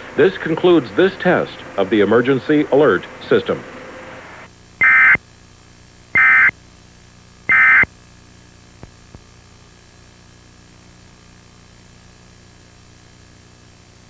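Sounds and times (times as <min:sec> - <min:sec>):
buzzing digital data tones: 0:04.8 - 0:05.2, 0:06.2 - 0:06.5, 0:07.5 - 0:07.9.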